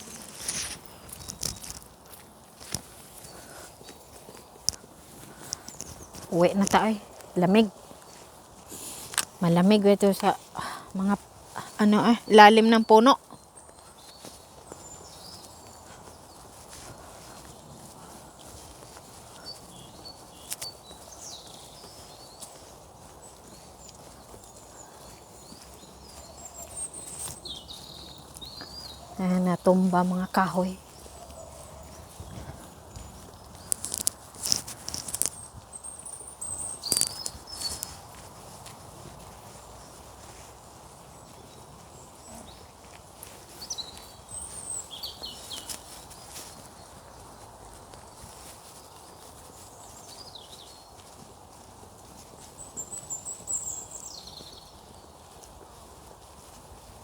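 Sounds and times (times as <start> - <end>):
low rustle: 0.0 - 9.4
small birds chirping: 0.0 - 57.0.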